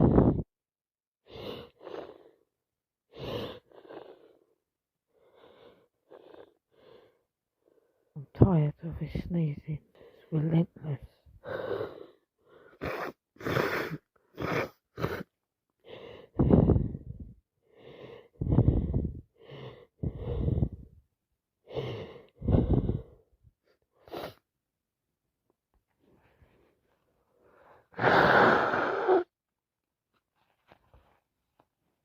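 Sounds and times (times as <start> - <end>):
sharp breaths through the nose: 1.2 - 2.5, 3.1 - 4.5, 5.1 - 8.1, 11.4 - 21.0, 21.6 - 23.3, 24.0 - 24.5, 26.0 - 29.3
gasping breaths: 1.3 - 2.5, 3.1 - 8.1, 11.3 - 21.0, 21.6 - 23.3
person sneezing: 12.8 - 15.3, 28.0 - 29.3.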